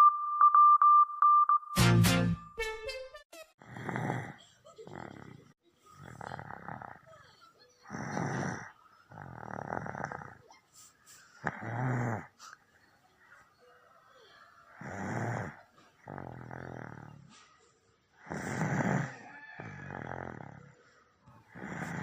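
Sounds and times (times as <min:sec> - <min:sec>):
baby snoring: 0:03.6 - 0:10.6, 0:11.4 - 0:12.6, 0:14.6 - 0:17.3, 0:18.2 - 0:20.8, 0:21.4 - 0:22.0.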